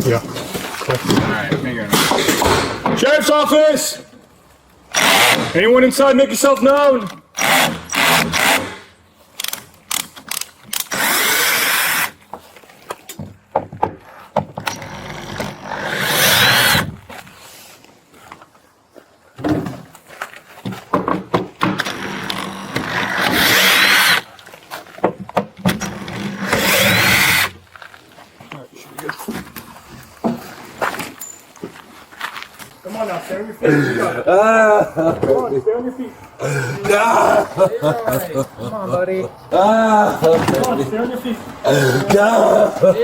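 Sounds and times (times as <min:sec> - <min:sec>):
power drill whining: 0:04.9 - 0:05.6, 0:07.4 - 0:08.9, 0:10.8 - 0:12.2, 0:14.6 - 0:17.0, 0:21.8 - 0:24.3, 0:25.8 - 0:27.6.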